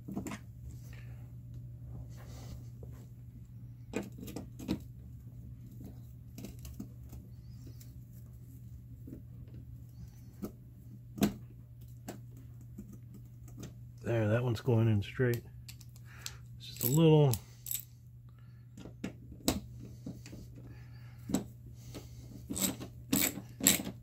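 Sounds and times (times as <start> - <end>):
steady low hum: 0.0 - 24.0
small metal parts clicking: 15.7 - 17.9, 22.5 - 23.9.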